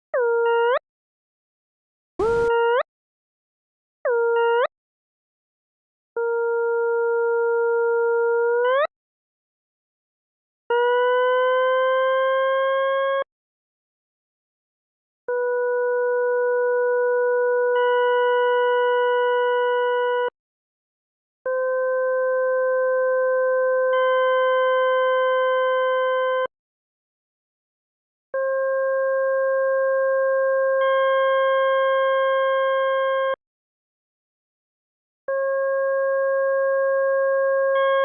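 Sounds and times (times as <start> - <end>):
sine tone chords: 15.3 - 20.4, 21.5 - 26.5, 28.4 - 33.4, 35.3 - 38.0.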